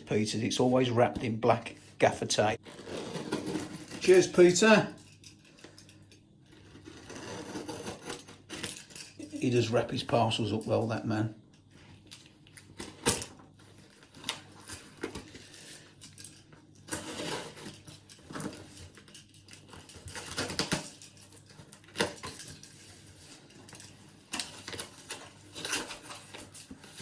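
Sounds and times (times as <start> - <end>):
tape and packaging tearing: 2.6 - 4.8, 24.3 - 27.0.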